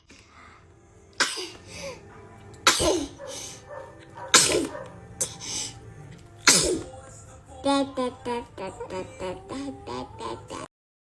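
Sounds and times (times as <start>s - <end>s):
baby sneezing: 1.2s - 1.6s, 2.6s - 3.6s, 4.2s - 5.4s, 6.4s - 6.9s.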